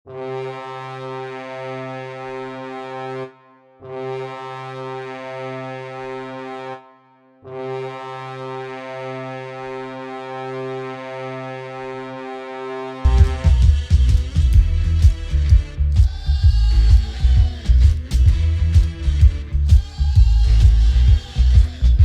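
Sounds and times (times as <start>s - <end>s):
hockey goal horn blasts: 0.1s - 15.4s.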